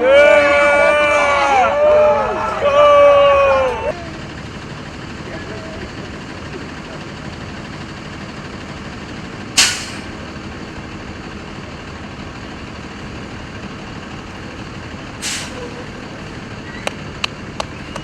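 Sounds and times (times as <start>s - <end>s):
heavy vehicle rumble: 0.0s - 18.0s
air brake hisses: 9.6s - 10.1s, 15.2s - 15.7s.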